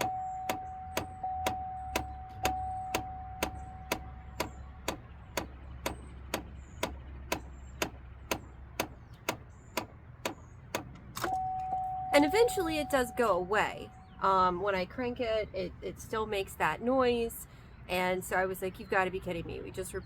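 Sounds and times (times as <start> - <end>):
actuator clicking behind dashboard: 0.0 - 11.9
steady tone: 11.3 - 14.5.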